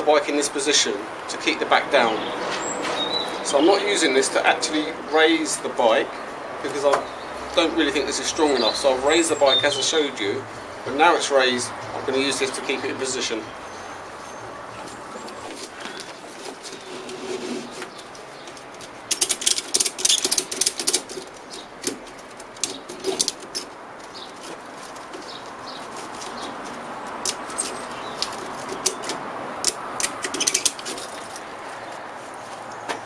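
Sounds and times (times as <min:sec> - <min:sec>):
ratchet strap clicking: 0:17.8 - 0:31.5.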